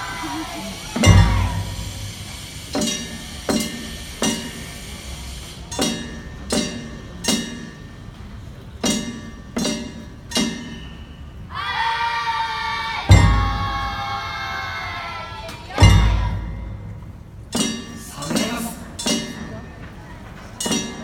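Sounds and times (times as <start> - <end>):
steady low rumble: 0.0 - 3.4
metal percussion ringing: 0.0 - 11.5, 13.1 - 14.3, 15.8 - 21.0.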